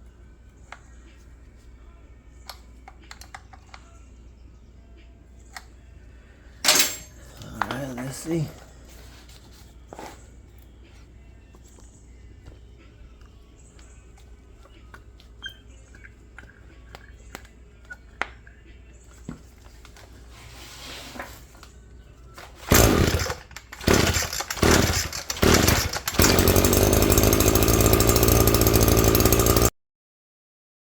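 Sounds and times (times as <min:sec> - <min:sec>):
two-stroke engine sputtering and running: 0:22.7 - 0:29.7.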